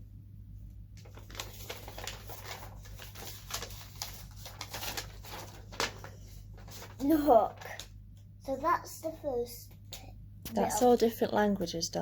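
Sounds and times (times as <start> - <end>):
paper rustling and crackling: 1.0 - 8.0.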